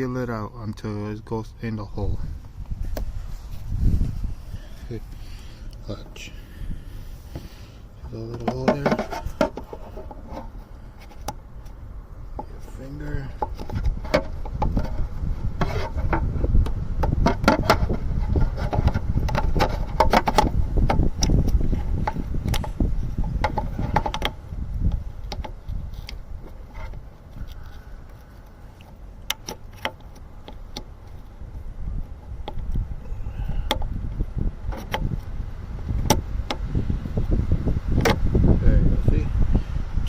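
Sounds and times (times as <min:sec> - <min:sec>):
hands rubbing and handling parts: 0:02.4 - 0:33.0
small clicks and knocks: 0:15.6 - 0:32.8.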